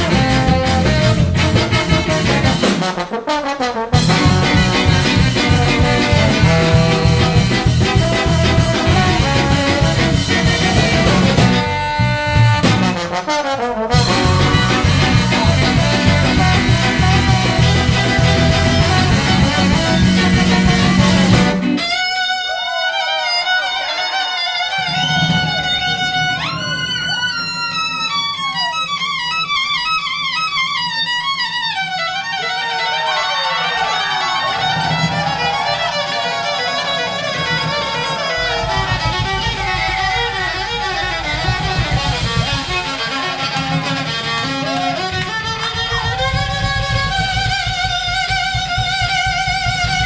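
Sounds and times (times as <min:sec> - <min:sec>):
live band playing: 0:00.0 - 0:50.0
violin fast runs: 0:14.0 - 0:50.0.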